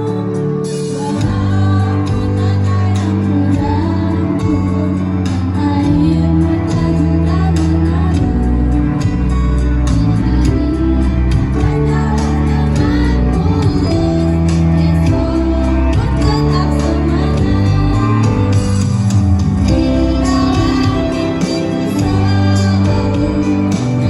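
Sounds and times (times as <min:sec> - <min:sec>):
instrumental accompaniment: 0:00.0 - 0:24.0
choir singing: 0:19.6 - 0:24.0.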